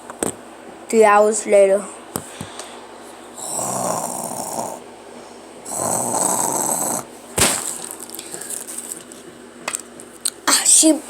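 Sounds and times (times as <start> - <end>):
person imitating snoring: 3.4 - 4.8, 5.6 - 7.1.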